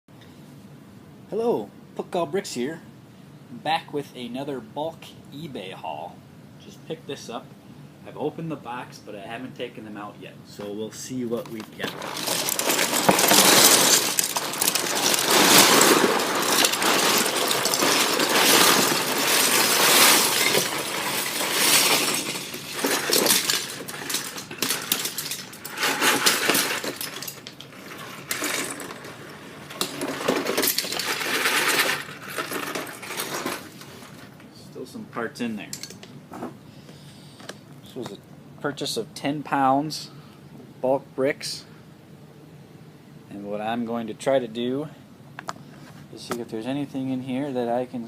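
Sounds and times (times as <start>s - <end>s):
plastic bricks clattering: 11.5s - 34.3s.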